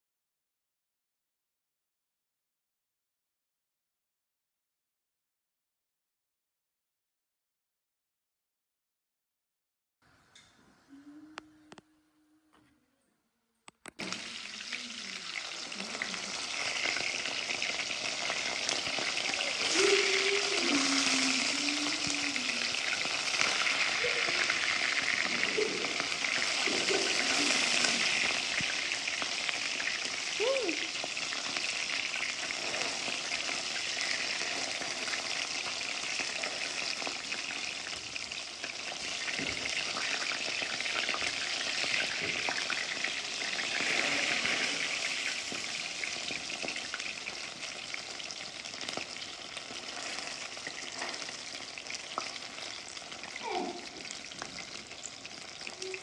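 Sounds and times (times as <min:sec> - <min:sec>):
food sizzling in a pan: 0:14.0 - 0:56.0.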